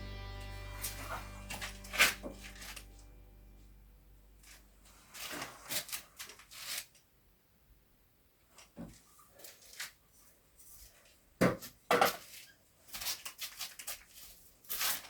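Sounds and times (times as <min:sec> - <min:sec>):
background music: 0:00.0 - 0:04.6.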